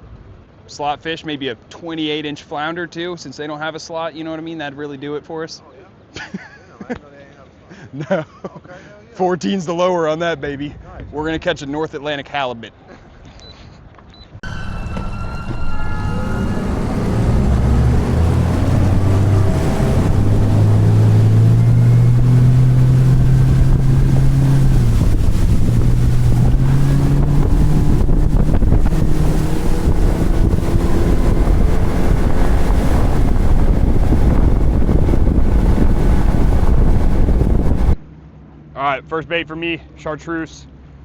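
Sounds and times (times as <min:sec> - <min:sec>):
outboard motor running: 0:14.4 - 0:38.0
wind buffeting microphone: 0:14.4 - 0:38.0.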